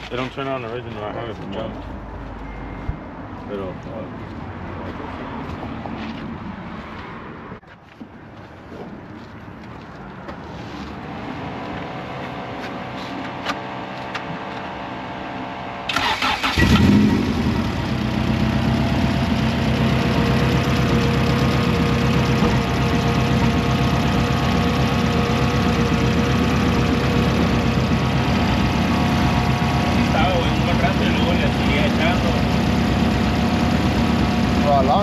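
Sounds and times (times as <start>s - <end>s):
car starter cranking: 15.9s - 17.3s
car engine idling: 15.9s - 35.0s.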